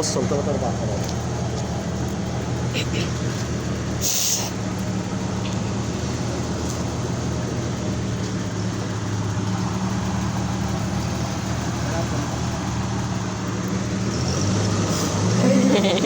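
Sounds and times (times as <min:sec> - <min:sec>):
car engine idling: 0:00.0 - 0:16.0
short hiss: 0:04.0 - 0:04.6.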